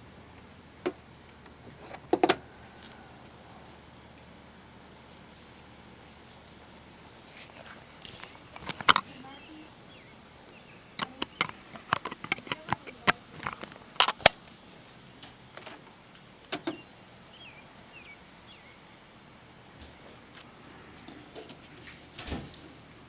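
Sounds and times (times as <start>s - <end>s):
small hard objects clicking: 11.0s - 14.4s.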